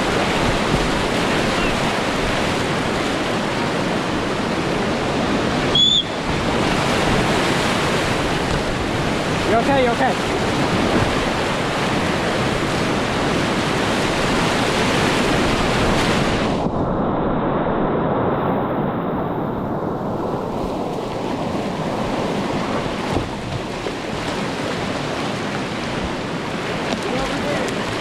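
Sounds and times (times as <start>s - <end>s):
whitewater rapids roaring: 0.0s - 16.6s, 20.7s - 28.0s.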